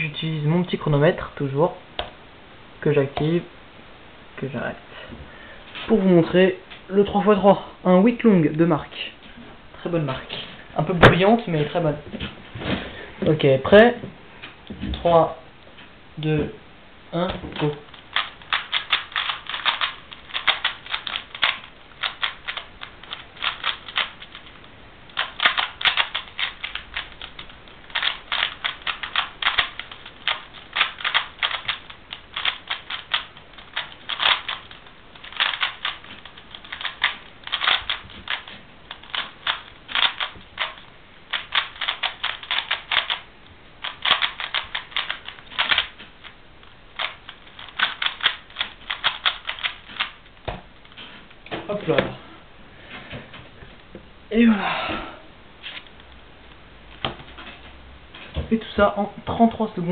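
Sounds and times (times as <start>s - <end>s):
plastic cube clacking: 17.6s - 46.4s, 47.0s - 50.2s.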